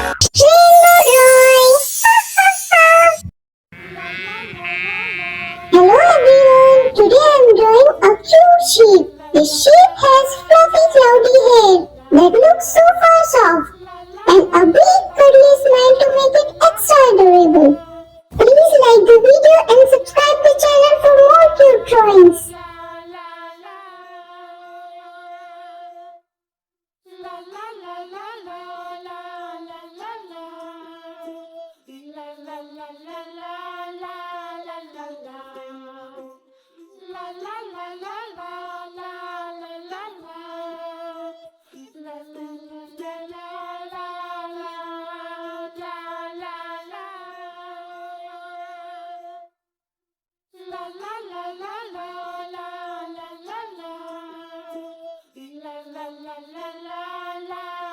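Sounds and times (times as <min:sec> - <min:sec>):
child-like humming melody: 0:04.0 - 0:17.8, 0:18.4 - 0:22.6.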